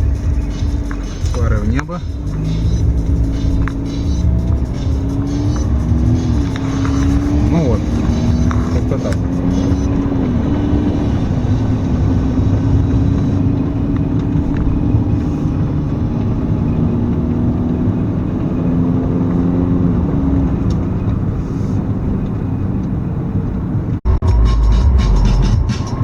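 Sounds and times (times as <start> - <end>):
low rumble of driving: 0.0 - 26.0
vehicle engine: 0.0 - 26.0.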